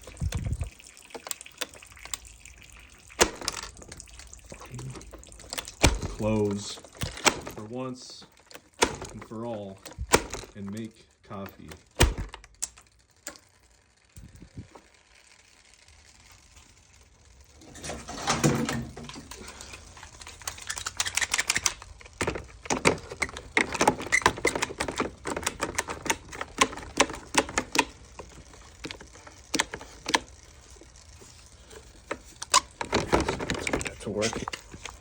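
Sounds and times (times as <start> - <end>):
plastic clicks and rattles: 0.0 - 2.4, 3.1 - 15.0, 17.8 - 35.0
plastic parts scraping: 3.1 - 13.5, 17.6 - 35.0.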